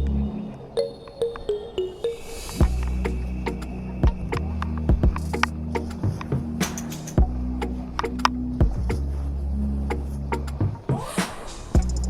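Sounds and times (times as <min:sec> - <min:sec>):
deep held bass notes: 0:02.6 - 0:06.6, 0:07.2 - 0:10.8.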